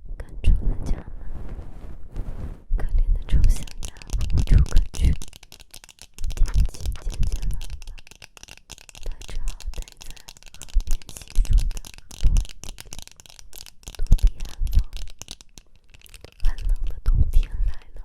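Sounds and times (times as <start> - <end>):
soft low thumps: 0.5 - 3.6
taps rustles and clicks of objects: 3.3 - 17.0.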